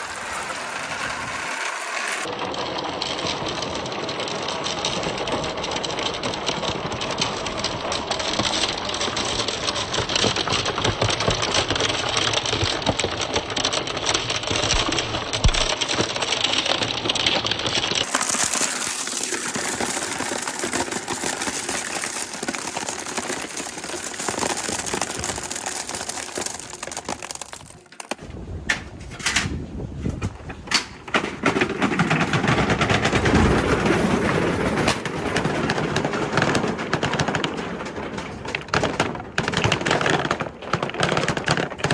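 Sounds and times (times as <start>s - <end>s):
balls clattering down wooden track: 0.0s - 41.9s.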